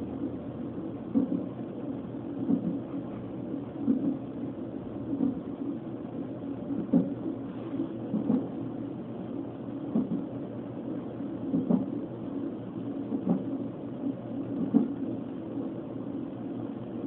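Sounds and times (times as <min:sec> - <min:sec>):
fetal heartbeat on doppler monitor: 0:00.0 - 0:17.0.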